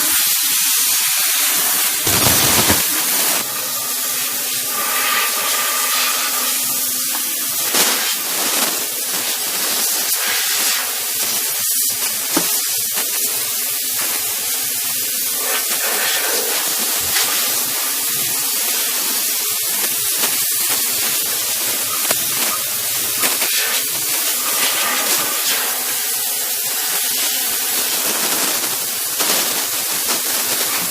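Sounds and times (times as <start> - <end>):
steam cleaner hissing: 0.1 - 3.4.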